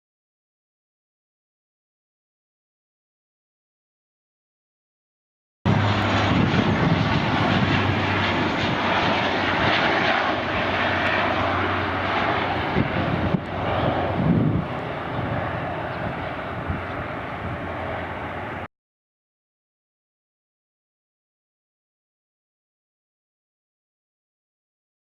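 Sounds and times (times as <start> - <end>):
turboprop airliner passing: 5.7 - 18.7.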